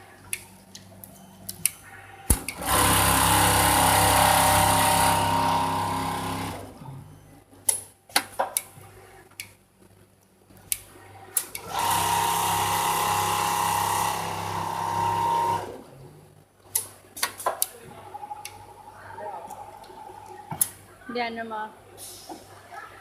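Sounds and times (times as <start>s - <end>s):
sewing machine humming: 2.5s - 6.8s, 11.6s - 16.0s.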